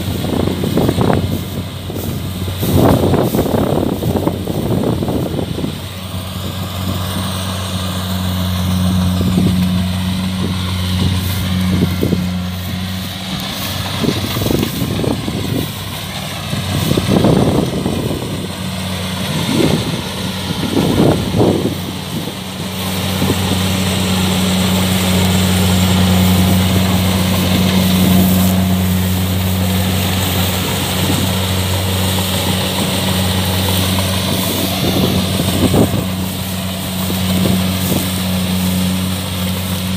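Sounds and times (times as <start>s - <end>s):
combine harvester diesel engine droning: 0.0s - 39.9s.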